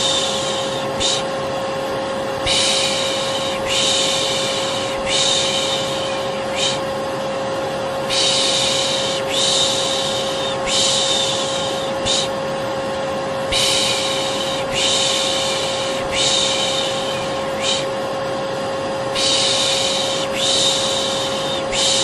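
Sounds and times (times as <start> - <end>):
person shushing: 0.0 - 1.4, 2.4 - 6.9, 8.1 - 12.4, 13.5 - 18.0, 19.1 - 22.0
vacuum cleaner humming: 0.0 - 22.0.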